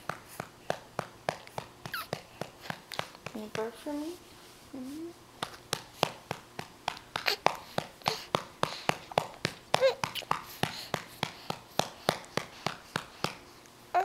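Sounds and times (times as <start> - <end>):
baby vocal sound: 9.7 - 10.7.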